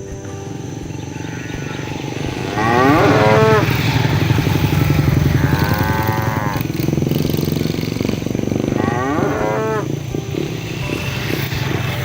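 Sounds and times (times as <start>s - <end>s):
steady low rumble: 0.0s - 8.8s
cow mooing: 1.1s - 10.9s.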